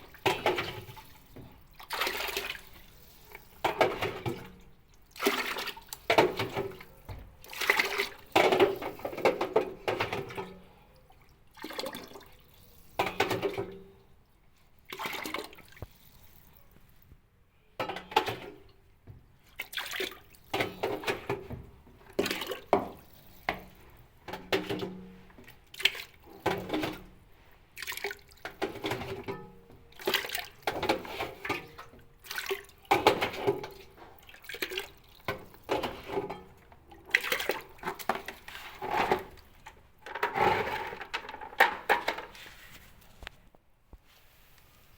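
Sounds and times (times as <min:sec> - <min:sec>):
water splashing and pouring: 0:00.0 - 0:09.3, 0:19.6 - 0:21.5, 0:22.1 - 0:24.0, 0:27.7 - 0:29.3, 0:29.9 - 0:36.3, 0:37.0 - 0:39.6.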